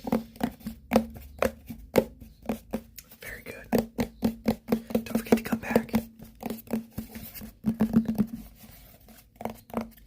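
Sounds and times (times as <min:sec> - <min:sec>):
tapping on a hard object: 0:00.0 - 0:08.5, 0:09.4 - 0:10.0
soft scratching: 0:05.1 - 0:10.0.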